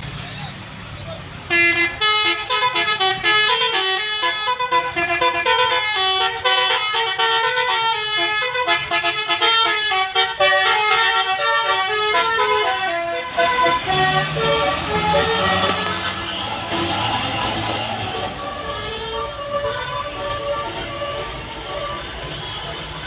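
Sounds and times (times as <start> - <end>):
musical air horn tune: 1.6 - 22.7.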